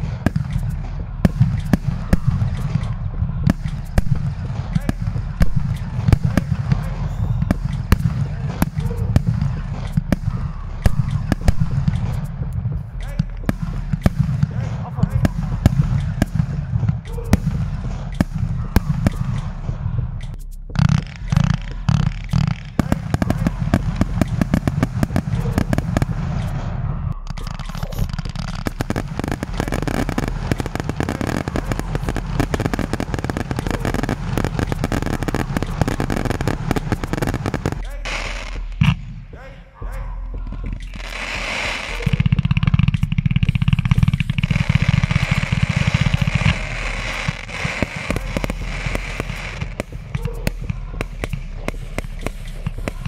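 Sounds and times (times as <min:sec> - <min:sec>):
heavy firework thumps: 0:00.0 - 0:26.9, 0:27.5 - 0:39.4, 0:40.4 - 0:53.0
steady hiss: 0:00.0 - 0:39.2
fireworks crackling and banging: 0:00.0 - 0:39.4, 0:40.4 - 0:53.0.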